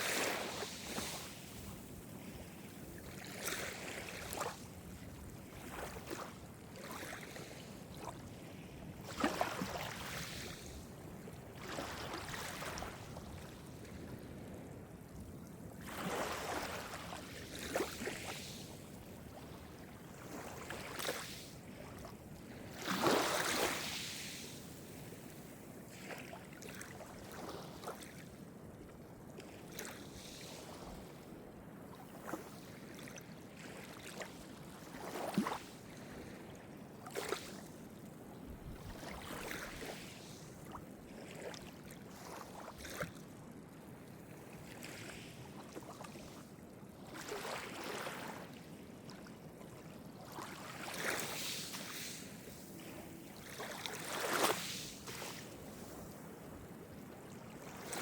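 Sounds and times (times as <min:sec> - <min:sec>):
sea waves breaking ashore: 0:50.8 - 0:57.0.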